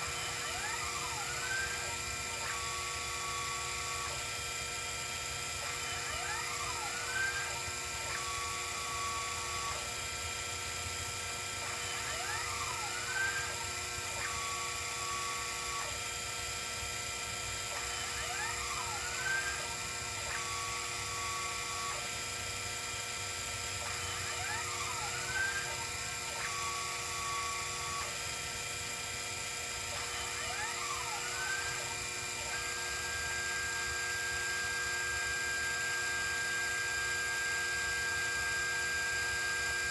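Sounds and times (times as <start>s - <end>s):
stepper motors pitch sweeps: 0.0s - 4.2s, 5.6s - 9.9s, 11.6s - 16.0s, 17.7s - 22.1s, 23.8s - 28.2s, 29.9s - 34.6s
spindle motor whining: 0.0s - 39.9s.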